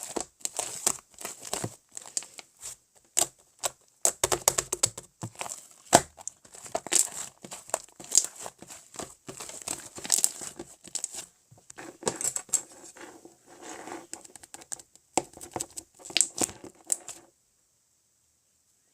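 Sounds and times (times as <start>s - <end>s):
slime crackling and popping: 0.0s - 2.4s, 3.1s - 11.2s, 15.2s - 17.1s.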